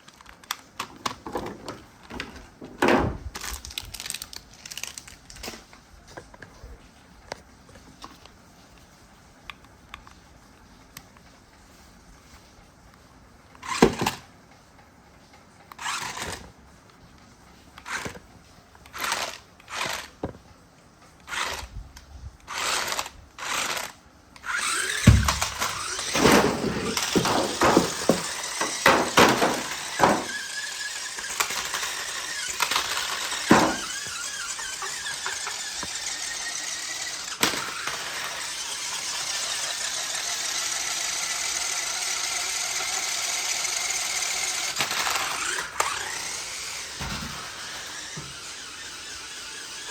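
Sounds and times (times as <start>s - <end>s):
toy car electric motor whirring: 3.3s - 5.6s, 13.5s - 14.2s, 15.7s - 16.6s, 17.8s - 18.2s, 18.8s - 20.3s, 21.2s - 49.9s.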